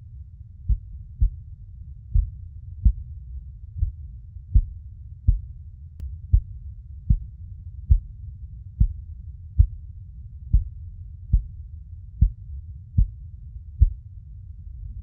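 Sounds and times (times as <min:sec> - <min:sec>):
low rumble: 0:00.0 - 0:15.0
heartbeat thumps: 0:00.7 - 0:01.5, 0:02.1 - 0:03.1, 0:03.8 - 0:05.6, 0:06.3 - 0:08.1, 0:08.8 - 0:09.0, 0:09.6 - 0:09.8, 0:10.5 - 0:11.6, 0:12.2 - 0:13.2, 0:13.8 - 0:14.0.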